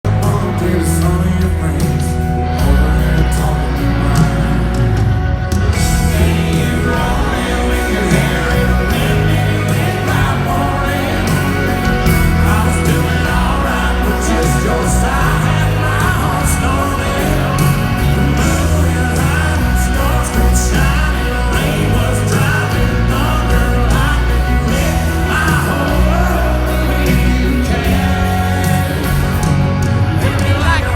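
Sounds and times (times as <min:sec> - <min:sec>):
live country band: 0:00.0 - 0:30.9
man singing: 0:00.0 - 0:30.9.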